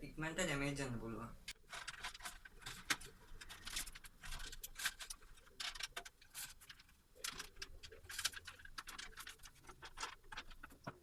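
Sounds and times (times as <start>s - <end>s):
cable rubbing and tapping on case: 1.7s - 11.0s.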